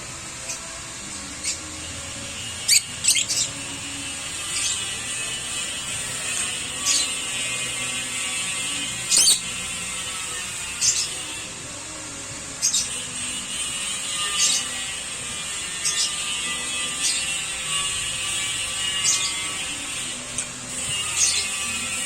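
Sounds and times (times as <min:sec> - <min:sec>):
lovebirds chirping: 0:02.5 - 0:11.3.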